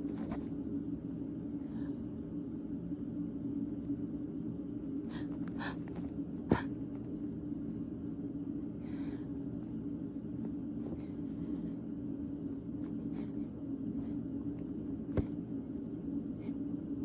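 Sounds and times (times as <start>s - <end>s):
low hum: 0.0s - 17.0s
catching breaths: 8.8s - 9.5s, 10.8s - 12.0s.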